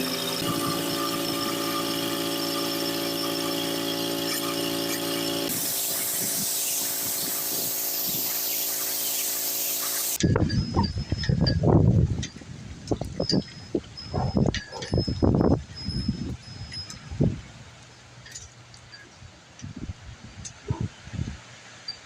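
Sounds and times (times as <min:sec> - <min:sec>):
machine motor whining: 0:00.0 - 0:08.1
hissy machine noise: 0:00.0 - 0:10.2.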